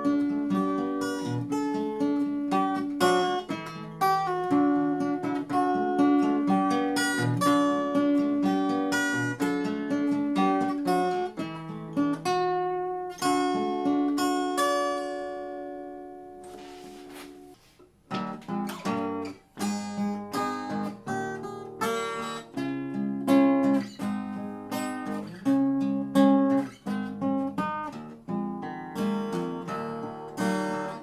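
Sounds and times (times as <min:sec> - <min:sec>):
fingerpicked acoustic guitar: 0:00.0 - 0:31.0.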